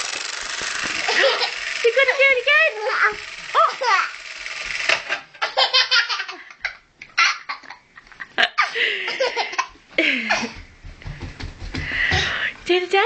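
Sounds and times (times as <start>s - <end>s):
baby laughing: 1.0s - 1.6s, 5.4s - 7.8s, 8.4s - 10.6s.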